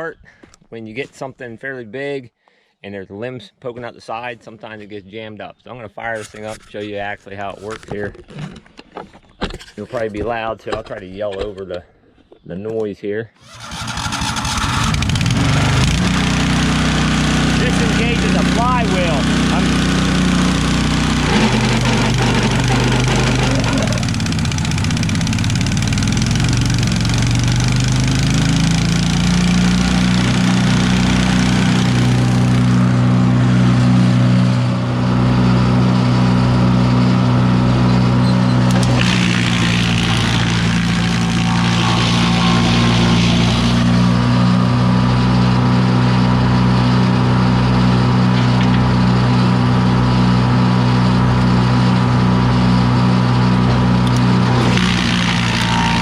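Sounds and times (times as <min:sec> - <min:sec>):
wood chipper engine running: 0:13.4 - 0:56.0.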